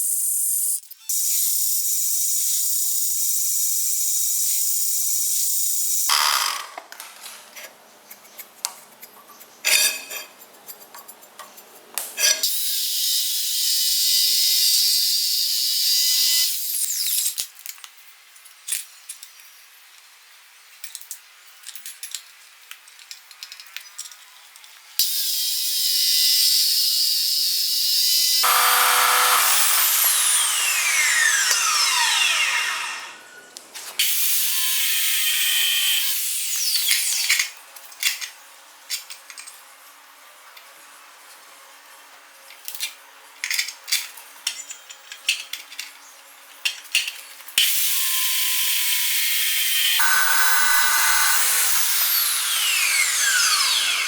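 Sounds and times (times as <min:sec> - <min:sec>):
angle grinder cutting steel: 0:00.0 - 0:06.7, 0:27.6 - 0:37.2, 0:47.6 - 0:54.0
grinder whine spinning down: 0:28.4 - 0:33.6, 0:49.6 - 0:54.0.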